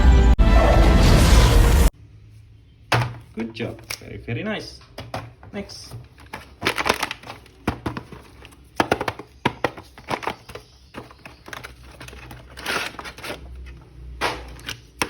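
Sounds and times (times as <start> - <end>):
packaging rustling: 5.8 - 15.0
plastic packaging crinkling: 6.0 - 15.0.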